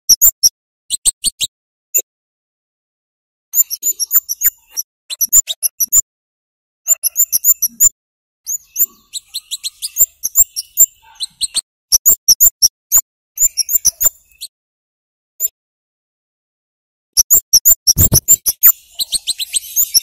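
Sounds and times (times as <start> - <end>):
bird giving sharp chirps: 3.6 - 6.0, 8.5 - 14.5, 17.2 - 20.0.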